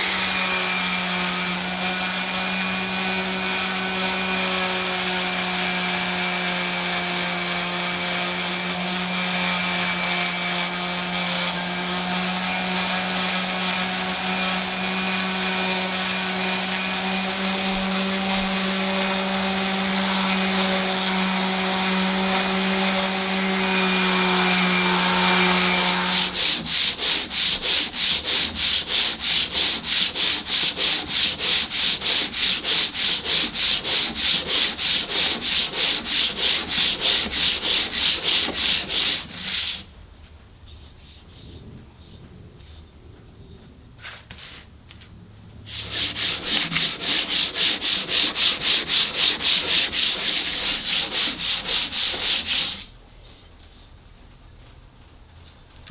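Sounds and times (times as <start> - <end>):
small power tool running: 0.0 - 39.8, 45.7 - 52.8
sandpaper rubbing on iron: 11.9 - 39.8, 40.7 - 44.6, 45.7 - 53.9.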